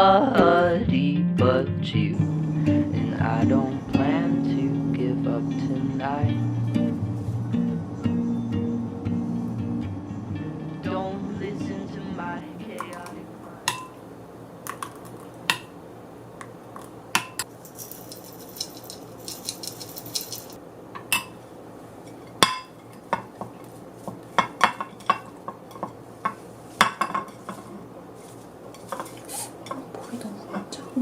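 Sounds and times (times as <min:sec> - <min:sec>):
utensils clinking against dishes: 0:12.6 - 0:14.0, 0:17.2 - 0:21.4, 0:24.4 - 0:27.8, 0:28.7 - 0:31.0.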